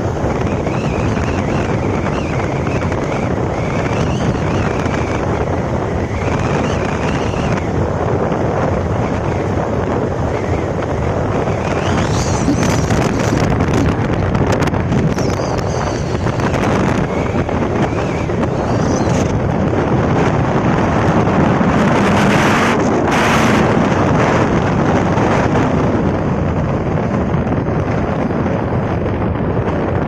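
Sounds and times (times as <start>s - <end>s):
strong wind buffeting microphone: 0.0s - 30.0s
faint wavering high whistles: 11.7s - 13.4s, 15.1s - 19.3s.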